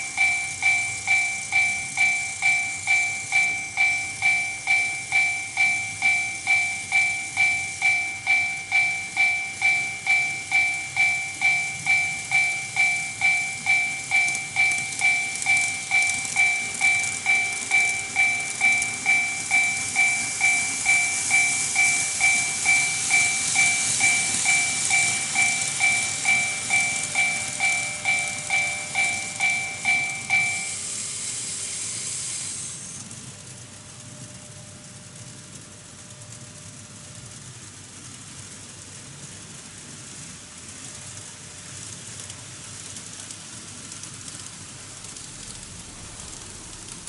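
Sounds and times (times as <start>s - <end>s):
two-tone warning bell: 0.0s - 31.9s
model train hissing on track: 0.0s - 34.3s, 36.7s - 47.0s.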